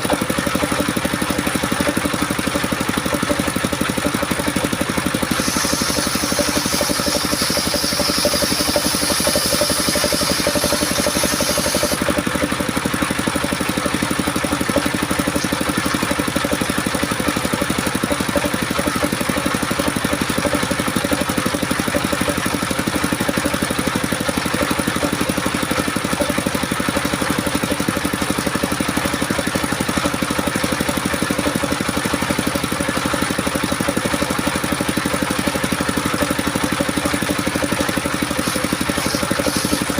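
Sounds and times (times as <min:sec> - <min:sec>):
sawmill engine running: 0:00.0 - 0:39.9
saw blade cutting wood hiss: 0:05.2 - 0:12.1, 0:14.8 - 0:16.0, 0:37.7 - 0:39.9.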